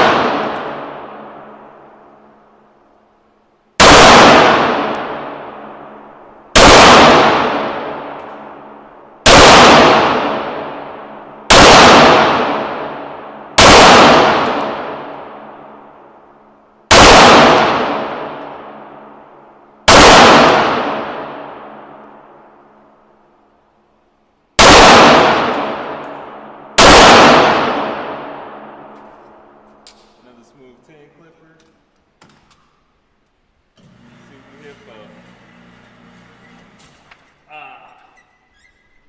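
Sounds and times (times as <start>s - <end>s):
rifle gunshots: 0.0s - 1.8s, 3.8s - 15.8s, 16.9s - 19.1s, 19.8s - 22.4s, 24.6s - 29.0s.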